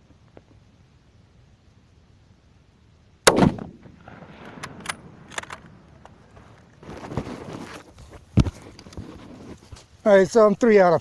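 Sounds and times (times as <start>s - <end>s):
rifle shot: 3.2s - 5.7s.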